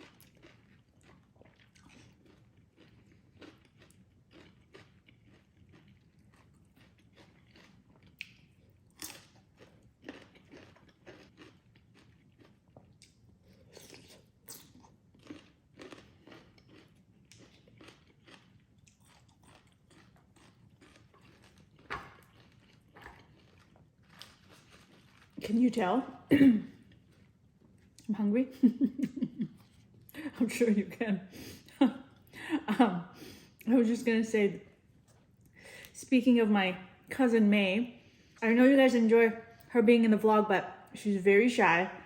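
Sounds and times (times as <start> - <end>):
person crunching and chewing: 0.0 - 25.7.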